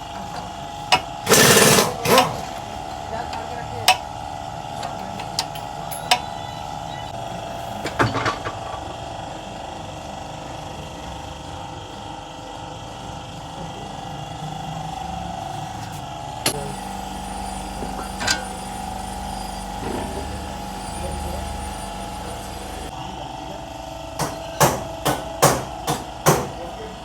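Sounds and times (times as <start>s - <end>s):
hand tools clicking and knocking: 0.2s - 2.6s
power tool rattling burst: 1.2s - 2.5s.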